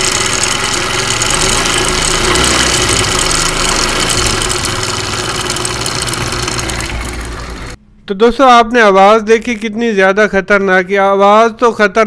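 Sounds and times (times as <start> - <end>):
motorcycle engine idling: 0.0 - 7.8
timing chain metallic clatter: 0.0 - 7.8.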